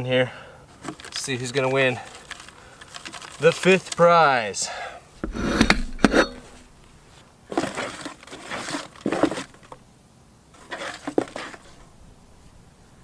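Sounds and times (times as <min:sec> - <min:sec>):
paper slips rustling and clinking: 0:02.0 - 0:04.0.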